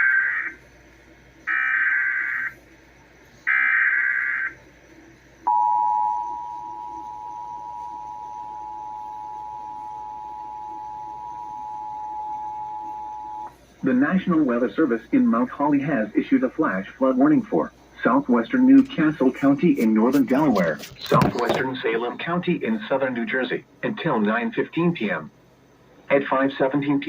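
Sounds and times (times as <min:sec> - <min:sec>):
shrill buzzing data tones: 0:00.0 - 0:00.6, 0:01.4 - 0:02.6, 0:03.4 - 0:04.7, 0:05.4 - 0:14.6
two-tone attention signal: 0:05.5 - 0:13.5.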